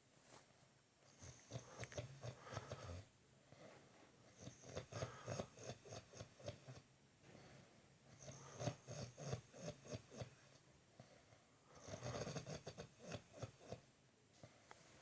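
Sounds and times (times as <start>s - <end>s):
quiet breath: 0.2s - 15.0s
person snoring: 11.8s - 13.5s.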